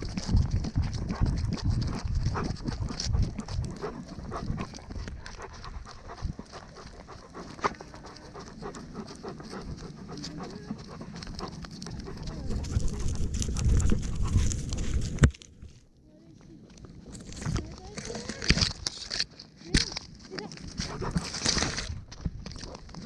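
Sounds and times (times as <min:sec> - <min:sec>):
dog panting: 0:00.0 - 0:14.8, 0:20.8 - 0:21.4
knocks and rustles of movement: 0:00.0 - 0:23.0.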